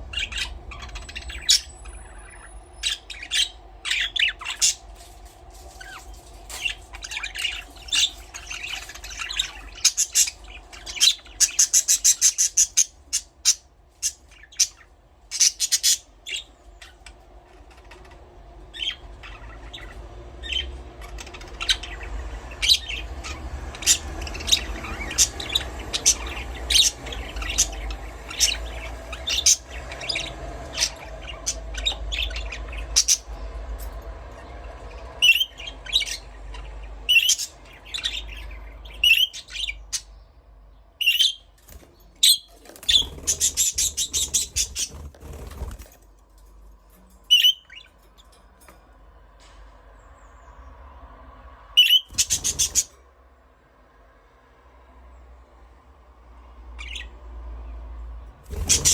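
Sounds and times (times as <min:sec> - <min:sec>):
budgerigars chirping: 0:00.0 - 0:04.8, 0:05.8 - 0:17.2, 0:18.7 - 0:33.4, 0:34.9 - 0:40.1, 0:41.0 - 0:41.5, 0:42.2 - 0:45.8, 0:47.3 - 0:47.9, 0:51.8 - 0:52.9, 0:56.8 - 0:57.2, 0:58.5 - 0:58.9.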